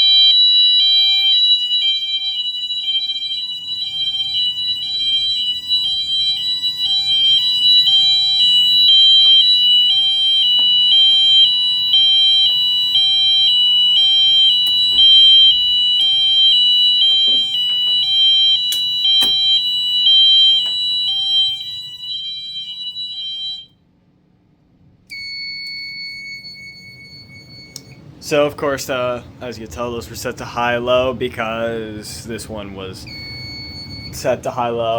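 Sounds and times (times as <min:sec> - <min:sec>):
hi-lo fire alarm horns: 0:00.0 - 0:23.8, 0:25.1 - 0:28.0, 0:33.0 - 0:34.9
clicks: 0:17.0 - 0:19.6.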